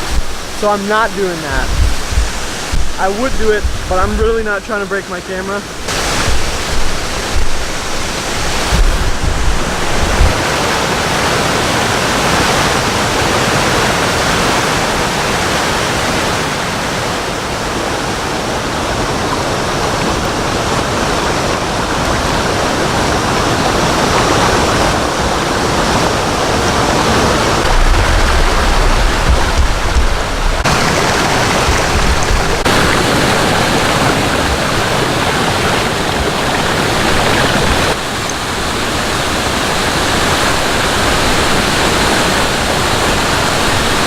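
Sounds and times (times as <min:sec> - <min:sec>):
waterfall rushing: 0:00.0 - 0:44.0
low rumble: 0:01.5 - 0:03.0, 0:05.7 - 0:10.4, 0:27.6 - 0:32.7.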